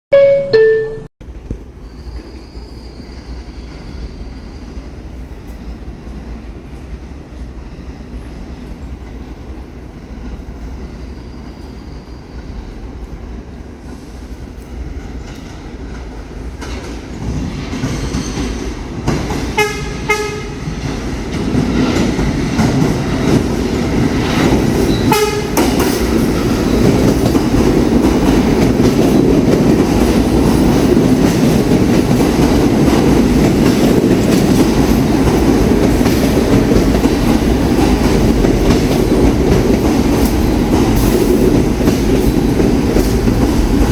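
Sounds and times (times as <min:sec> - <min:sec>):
subway train horn toots: 0:00.1 - 0:01.0, 0:19.5 - 0:20.8, 0:24.8 - 0:26.0
train wheels rumbling on rails: 0:01.2 - 0:43.9.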